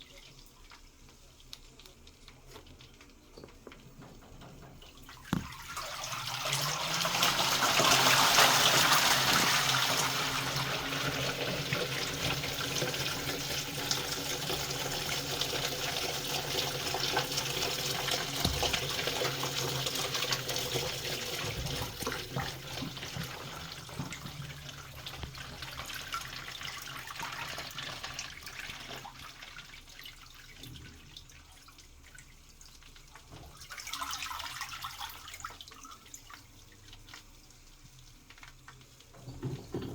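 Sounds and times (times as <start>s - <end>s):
washing machine hum: 0.0s - 39.9s
water pouring into drum: 0.0s - 39.9s.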